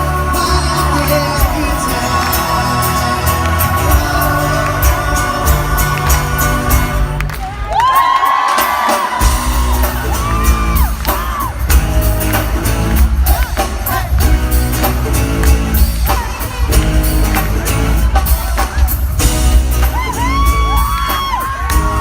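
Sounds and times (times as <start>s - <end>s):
male vocal group singing: 0.0s - 7.2s
pop band playing: 0.0s - 22.0s.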